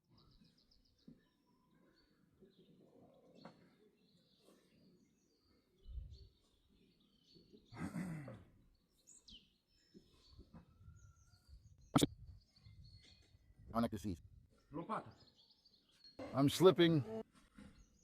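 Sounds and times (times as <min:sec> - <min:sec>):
faint bird chirps: 0:00.0 - 0:18.0.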